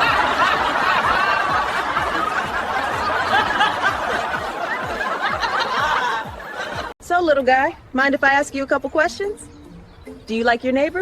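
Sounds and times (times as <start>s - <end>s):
crowd laughing: 0.0s - 7.0s.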